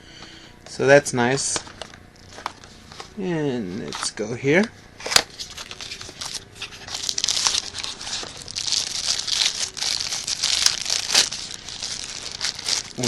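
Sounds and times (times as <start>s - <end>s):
packaging crinkling and rustling: 1.5s - 3.2s, 5.0s - 13.0s.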